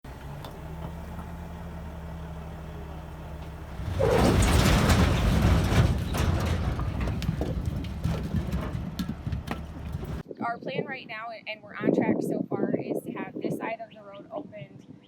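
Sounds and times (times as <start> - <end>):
diesel engine idling: 0.0 - 10.2
loud engine rush and rumble: 0.0 - 10.2
knocks and clanks: 2.6 - 10.2.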